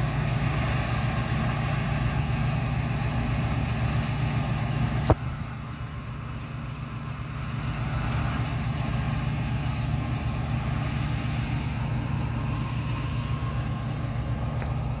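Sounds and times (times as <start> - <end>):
farm machinery engine running: 0.0 - 15.0.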